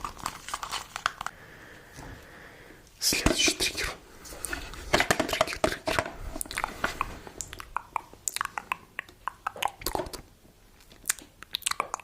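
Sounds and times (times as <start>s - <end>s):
wet mouth clicks and crackles: 5.4s - 10.2s, 10.8s - 12.0s.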